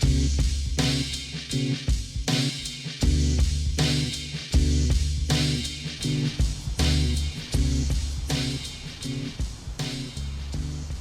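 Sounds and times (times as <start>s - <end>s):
plucked guitar and bass music: 0.0s - 1.0s, 3.0s - 9.3s.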